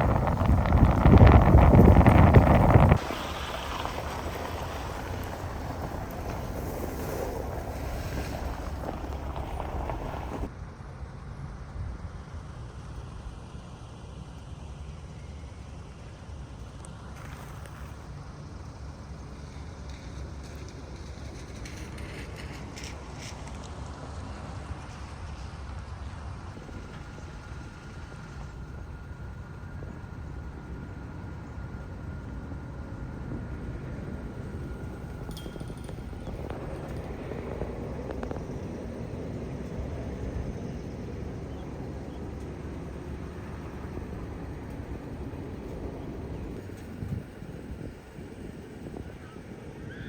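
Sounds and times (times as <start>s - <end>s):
wind noise on microphone: 0.0s - 10.5s, 28.6s - 50.0s
car road and engine rumble: 0.0s - 50.0s.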